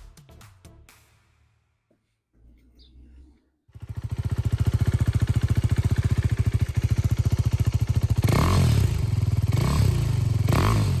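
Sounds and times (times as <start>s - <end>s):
motorcycle engine idling: 3.8s - 11.0s
engine revving: 7.9s - 11.0s.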